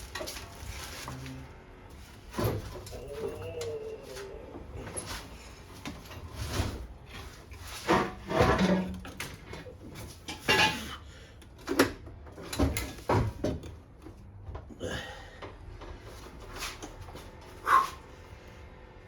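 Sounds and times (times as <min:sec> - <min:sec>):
metal clunks and scrapes: 0:00.0 - 0:03.3, 0:04.6 - 0:14.0.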